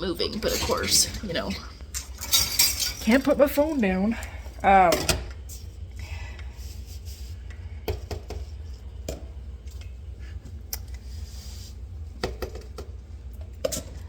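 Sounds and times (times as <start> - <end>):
dishes clinking and knocking: 0.4 - 3.4.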